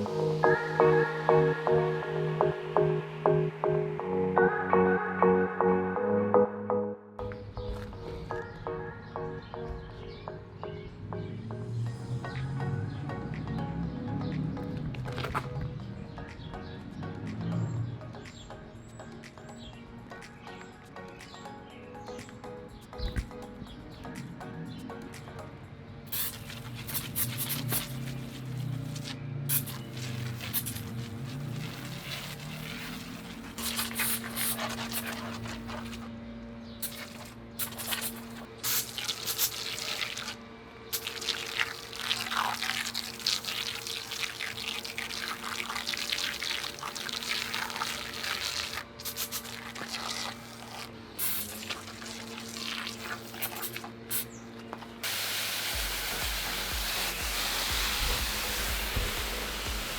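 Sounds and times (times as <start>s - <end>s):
background music with low notes: 0.0s - 59.9s
water spraying and dripping: 26.1s - 36.1s, 36.8s - 54.3s, 55.0s - 59.9s.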